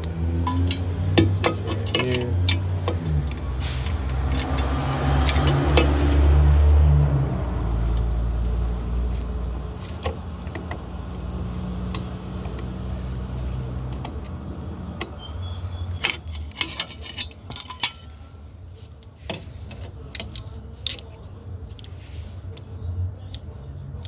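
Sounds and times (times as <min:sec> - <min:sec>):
vehicle engine rumble: 0:00.0 - 0:24.0
metal brake parts clinking: 0:00.4 - 0:02.6, 0:15.9 - 0:18.9.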